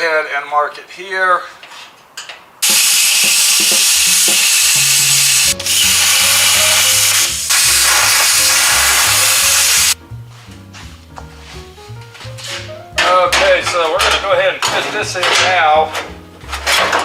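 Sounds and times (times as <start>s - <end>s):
power tool cutting sheet metal: 2.6s - 10.0s
background music: 5.0s - 17.0s.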